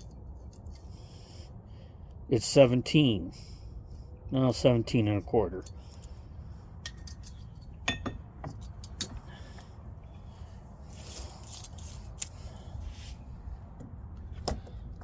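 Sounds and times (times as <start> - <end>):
metal socket extensions clinking: 6.8 - 8.1.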